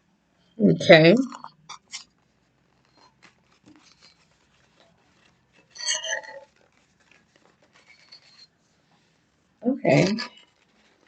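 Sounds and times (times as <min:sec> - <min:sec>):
packaging rustling: 0:01.9 - 0:09.3, 0:10.2 - 0:11.0
cardboard box scraping crinkle: 0:02.3 - 0:09.3, 0:10.0 - 0:11.0.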